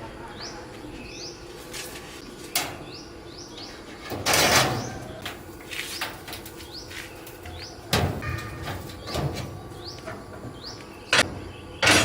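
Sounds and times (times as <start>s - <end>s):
bird chirps: 4.8s - 11.8s.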